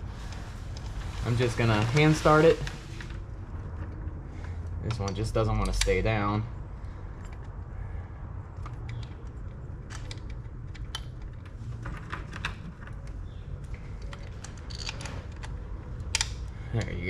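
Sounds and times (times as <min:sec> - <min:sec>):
steady low rumble: 0:00.0 - 0:17.0
small metal parts clicking: 0:08.6 - 0:16.9.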